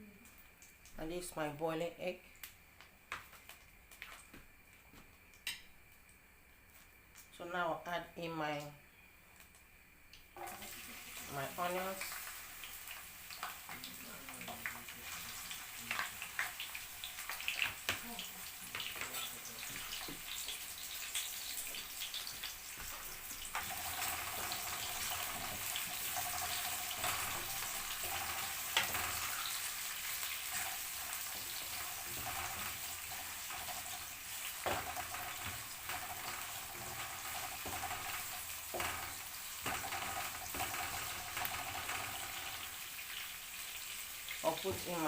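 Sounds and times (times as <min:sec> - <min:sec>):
onions sizzling in oil: 0:10.2 - 0:45.0.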